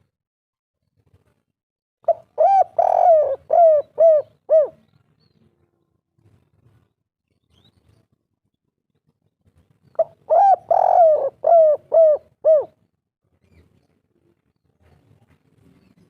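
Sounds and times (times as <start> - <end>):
dove cooing: 2.0 - 4.8, 10.0 - 12.8.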